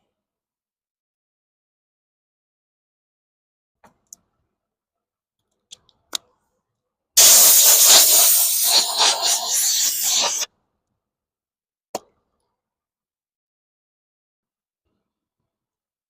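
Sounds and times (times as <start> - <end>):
pressurised spray hiss: 7.2 - 10.5.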